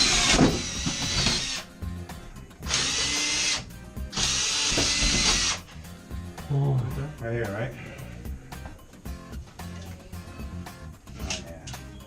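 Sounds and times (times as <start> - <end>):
power drill boring into wood: 0.0 - 1.7, 2.7 - 5.6.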